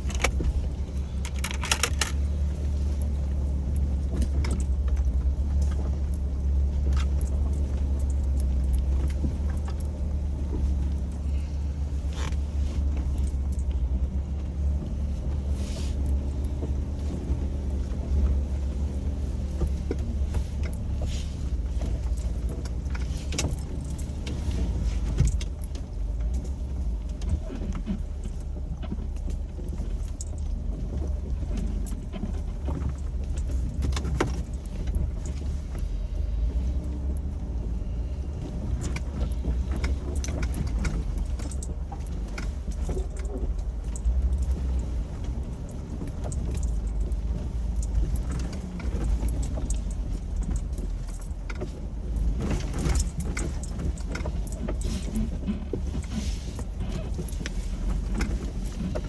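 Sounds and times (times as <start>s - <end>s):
loose parts rattling: 0.0s - 2.5s
vehicle engine rumbling: 0.0s - 59.0s.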